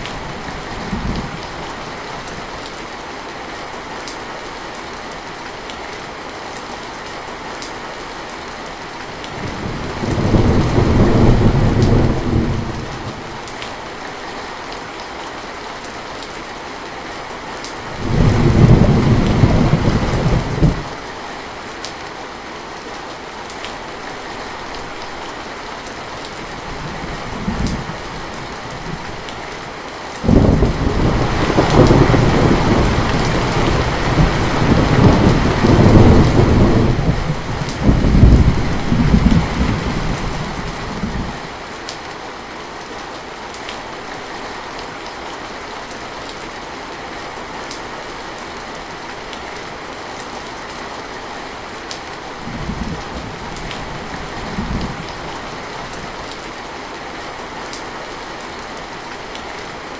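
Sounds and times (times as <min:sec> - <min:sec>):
heavy rain: 0:00.0 - 0:59.9
thunder rumbling: 0:09.4 - 0:13.4, 0:17.9 - 0:21.0, 0:30.2 - 0:41.4.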